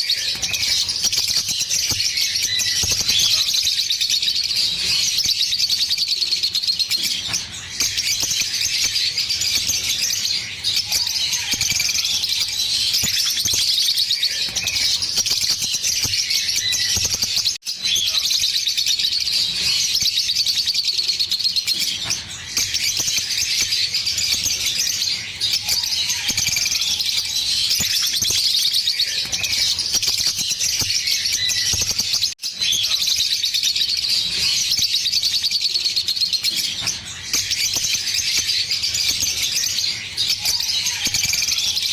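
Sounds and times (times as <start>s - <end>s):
lovebirds chattering: 0.0s - 41.9s.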